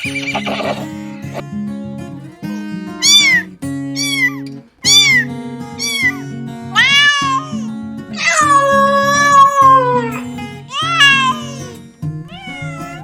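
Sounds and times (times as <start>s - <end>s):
cat meowing: 3.0s - 13.0s.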